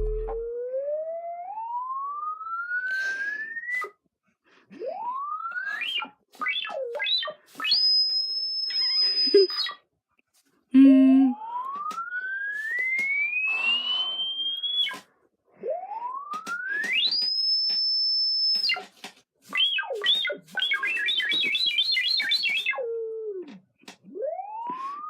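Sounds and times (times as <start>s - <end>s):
child making whistle-like sound effects: 5.8s - 9.8s.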